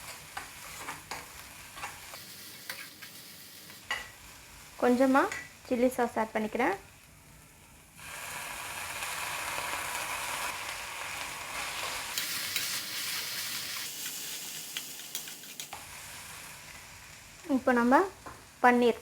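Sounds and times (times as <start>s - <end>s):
vegetables sizzling in a pan: 0.0s - 19.0s
spatula clicking against pan: 14.7s - 15.8s.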